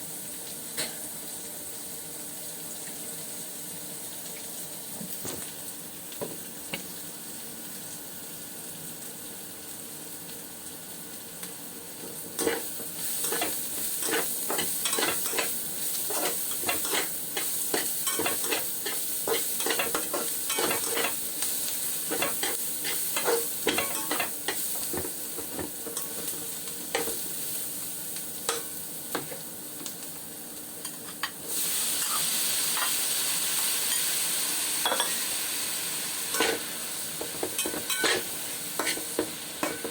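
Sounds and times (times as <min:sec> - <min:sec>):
food sizzling in hot oil: 0:00.0 - 0:39.9
spatula scraping and clinking pan: 0:12.4 - 0:21.2, 0:22.1 - 0:24.6, 0:34.8 - 0:35.2, 0:36.3 - 0:36.6, 0:37.2 - 0:39.9.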